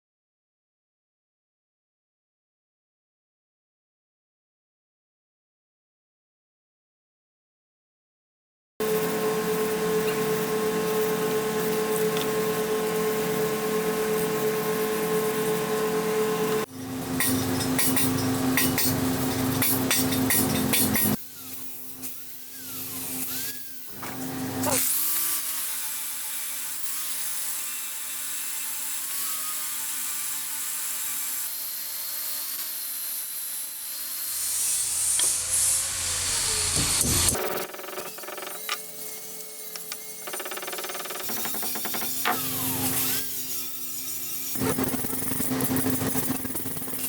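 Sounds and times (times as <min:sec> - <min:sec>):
tool humming with scraping ticks: 0:08.9 - 0:25.7, 0:34.4 - 0:47.0
power tool motor tone: 0:34.4 - 0:47.0.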